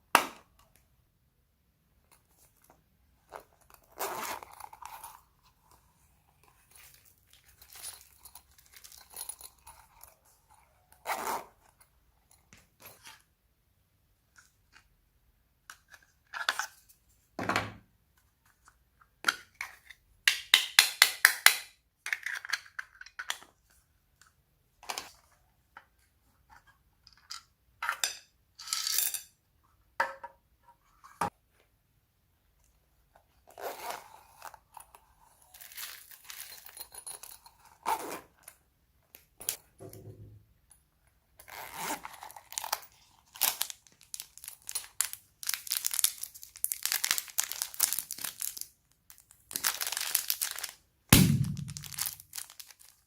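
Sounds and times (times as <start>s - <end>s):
slime crackling and popping: 51.2s - 53.0s.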